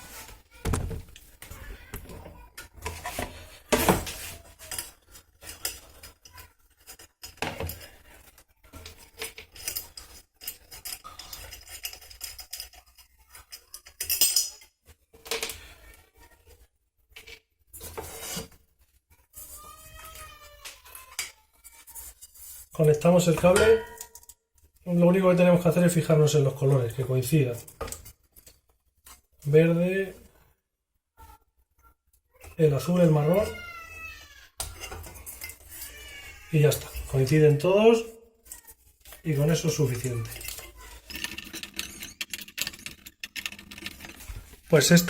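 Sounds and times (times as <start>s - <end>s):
metal screws clinking: 8.8s - 14.7s, 39.3s - 45.0s.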